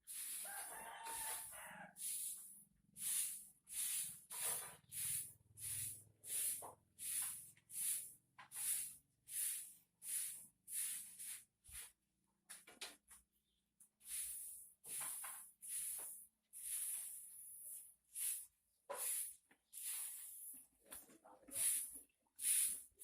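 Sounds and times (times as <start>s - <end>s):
broom sweeping: 0.0s - 12.0s, 14.0s - 23.0s.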